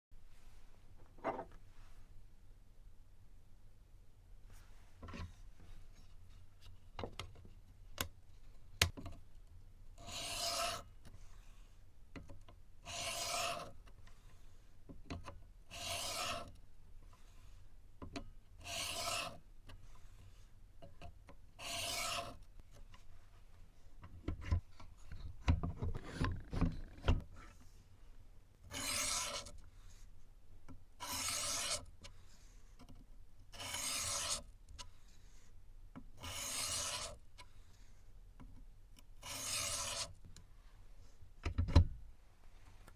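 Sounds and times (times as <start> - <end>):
knife scraping on sharpening stone: 10.0 - 10.8, 12.9 - 13.7, 15.7 - 16.5, 18.7 - 19.4, 21.6 - 22.4, 28.7 - 29.5, 31.0 - 31.8, 33.6 - 34.4, 36.2 - 37.2, 39.2 - 40.1.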